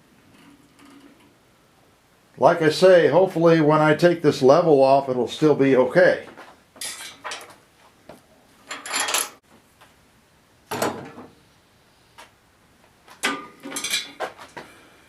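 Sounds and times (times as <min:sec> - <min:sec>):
metal clanking and rattling: 0:08.6 - 0:09.4, 0:13.2 - 0:14.4.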